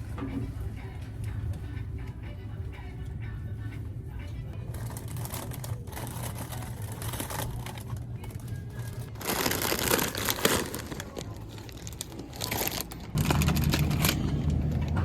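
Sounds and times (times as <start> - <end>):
crinkling noise: 4.6 - 15.0.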